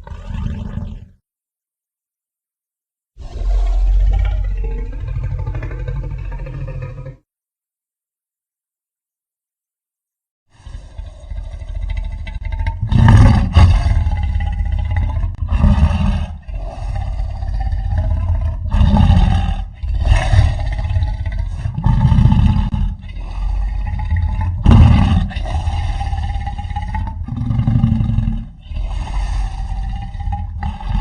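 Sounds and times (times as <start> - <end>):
creature roars and growls: 3.2 - 7.2, 10.5 - 31.0.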